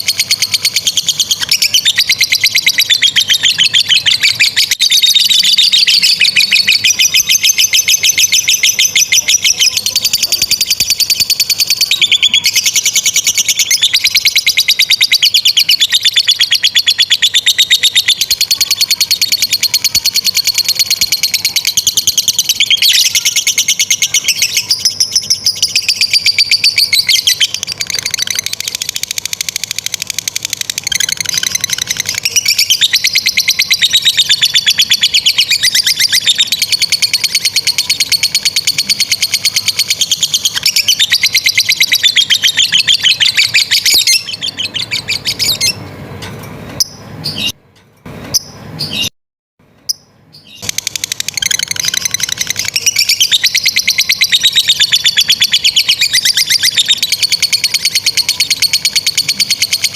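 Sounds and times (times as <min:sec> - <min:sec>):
lovebird chattering trill: 0:00.0 - 0:45.8, 0:49.9 - 0:59.9.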